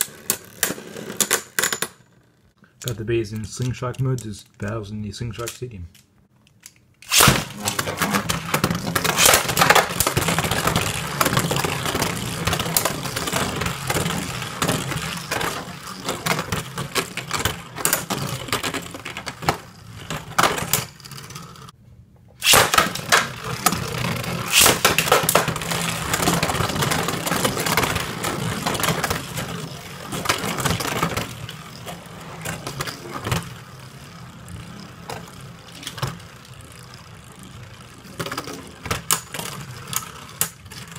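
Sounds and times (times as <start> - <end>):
spinning tops clashing in stadium: 7.0 - 21.7, 22.4 - 40.5.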